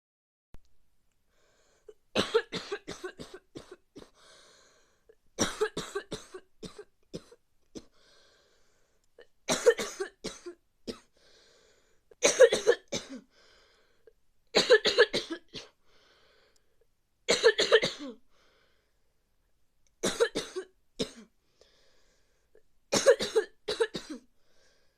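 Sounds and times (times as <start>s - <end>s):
person coughing: 2.2s - 4.2s, 5.4s - 7.9s, 9.5s - 11.1s, 12.2s - 13.3s, 14.6s - 15.8s, 17.3s - 18.2s, 20.0s - 21.3s, 22.9s - 24.3s.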